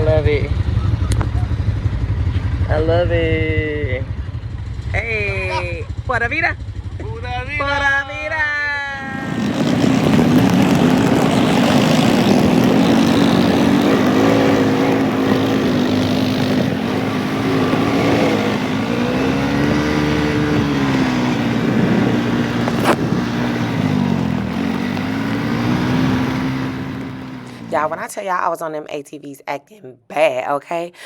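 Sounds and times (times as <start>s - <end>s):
atv engine revving: 0.0s - 7.2s, 8.9s - 28.1s
steady rush of noise: 8.9s - 27.8s.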